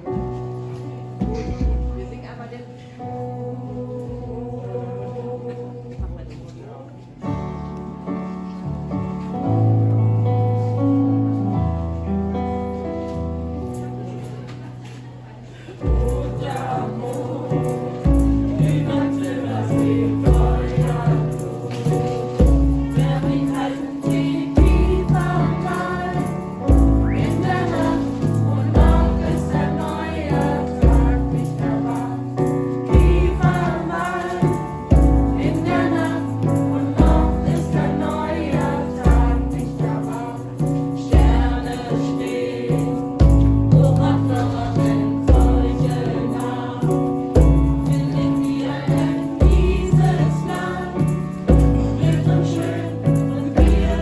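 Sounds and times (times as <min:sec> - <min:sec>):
choir singing: 0:03.2 - 0:06.2, 0:15.6 - 0:54.0
bass accompaniment: 0:15.8 - 0:54.0
steady beat: 0:18.1 - 0:31.8.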